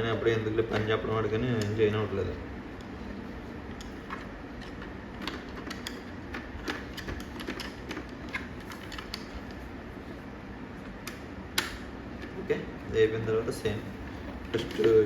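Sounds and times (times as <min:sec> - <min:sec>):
plastic helmet parts clicking: 0:03.7 - 0:09.7.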